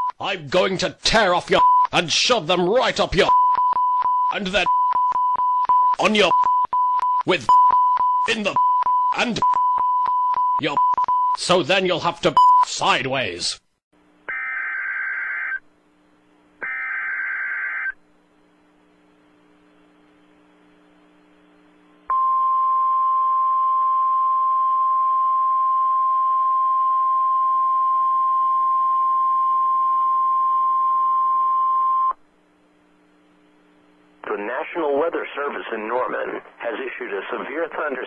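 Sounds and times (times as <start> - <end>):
buzzy data burst screech: 16.6 - 18.0.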